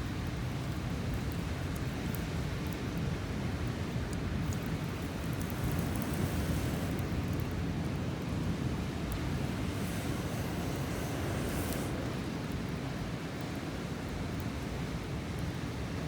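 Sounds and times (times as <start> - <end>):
wind: 0.0 - 16.0
sea surf: 4.6 - 14.1.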